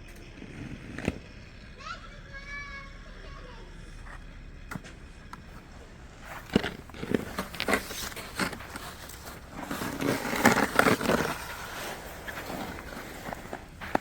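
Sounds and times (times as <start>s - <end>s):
crunches in deep snow: 5.5s - 14.0s.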